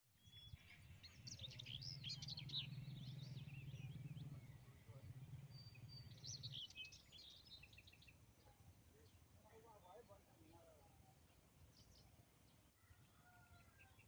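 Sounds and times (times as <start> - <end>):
small birds chirping: 0.2 - 14.0.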